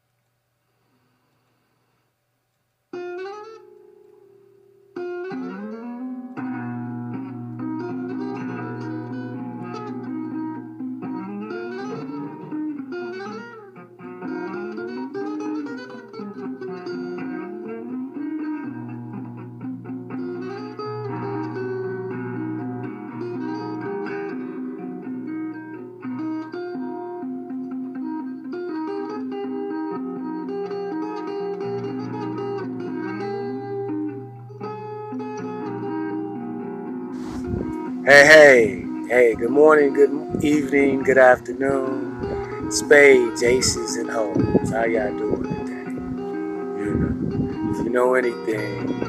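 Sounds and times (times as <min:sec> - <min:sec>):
solo guitar melody: 0:02.9 - 0:49.0
held low guitar note: 0:37.2 - 0:49.0.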